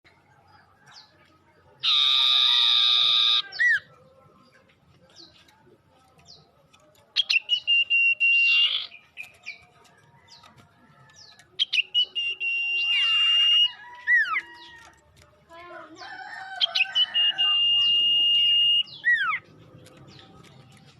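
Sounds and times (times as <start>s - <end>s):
bird harsh buzzy call: 1.8s - 3.8s
bird clicks and high whistle: 7.2s - 9.6s, 11.6s - 14.9s, 16.8s - 19.3s.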